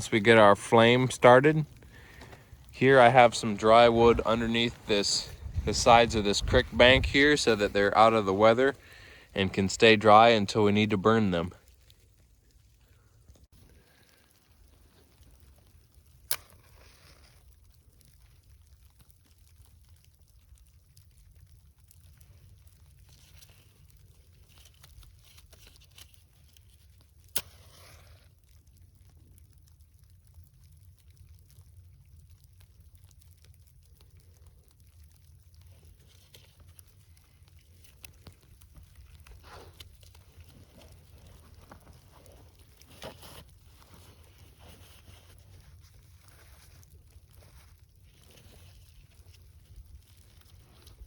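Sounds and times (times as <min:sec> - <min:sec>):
steady low rumble: 0:00.0 - 0:11.4
sticks snapping: 0:16.1 - 0:16.8, 0:27.2 - 0:27.9
soft rustling: 0:35.4 - 0:51.0.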